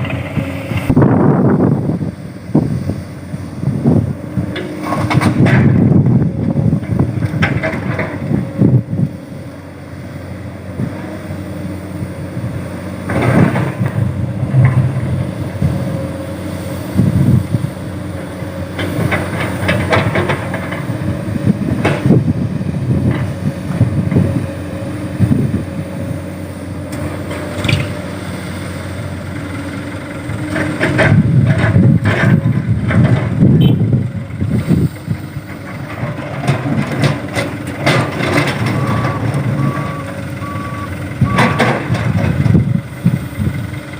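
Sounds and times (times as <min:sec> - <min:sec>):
excavator engine running: 0:00.0 - 0:43.9
reversing alarm beeping: 0:38.7 - 0:41.6.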